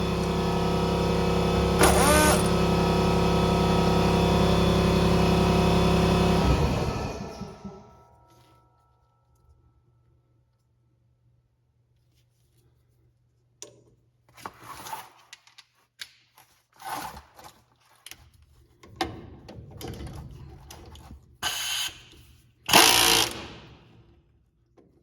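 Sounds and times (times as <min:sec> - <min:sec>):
handheld power tool running: 0:00.0 - 0:07.5, 0:22.7 - 0:23.6.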